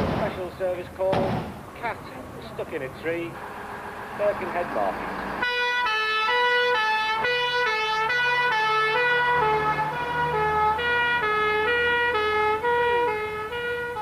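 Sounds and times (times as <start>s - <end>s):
engine rumble: 0.0s - 14.0s
two-tone siren: 5.4s - 14.0s.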